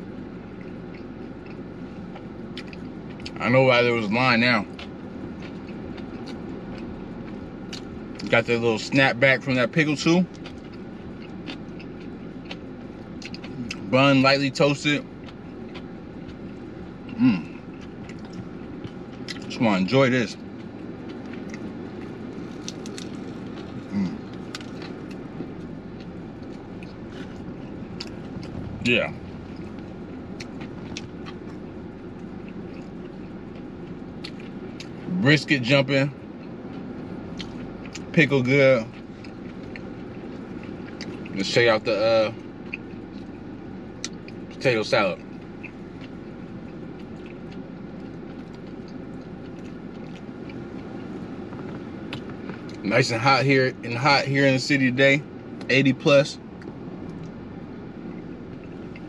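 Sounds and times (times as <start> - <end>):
street traffic rumble: 0.0 - 59.0
man chewing: 0.1 - 3.4, 4.6 - 8.3, 10.2 - 14.0, 15.0 - 19.6, 20.3 - 35.2, 36.2 - 38.2, 38.8 - 41.4, 42.4 - 52.8, 56.4 - 59.0
man humming mm: 17.1 - 17.6, 23.9 - 24.2.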